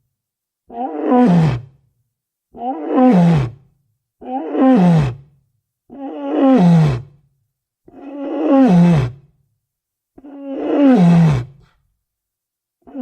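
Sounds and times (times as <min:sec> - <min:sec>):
walrus bellowing: 0:10.2 - 0:11.8.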